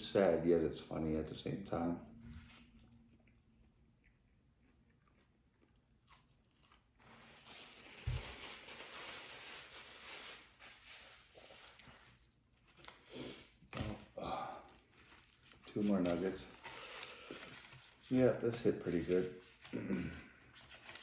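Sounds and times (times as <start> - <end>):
person chewing and crunching food: 2.8 - 7.3.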